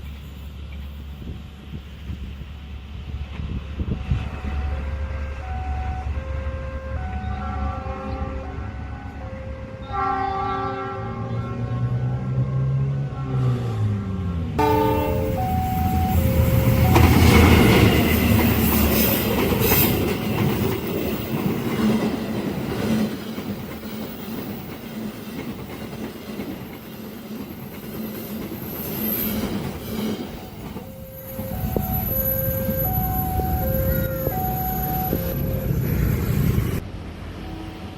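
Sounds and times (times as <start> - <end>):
train passing on rails: 0.0 - 37.9
two-tone warning chime: 14.6 - 18.1, 30.8 - 35.9.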